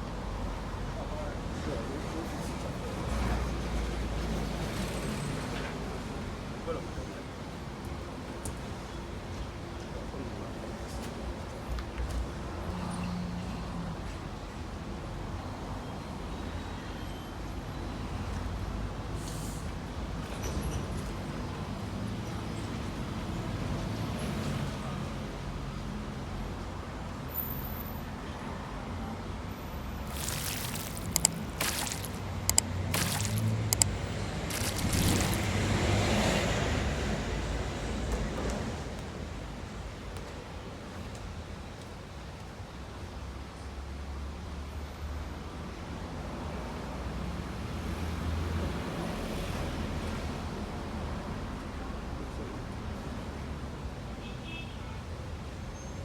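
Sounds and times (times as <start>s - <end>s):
low rumble of vehicle noise: 0.0s - 56.0s
road traffic rumble: 28.0s - 44.5s.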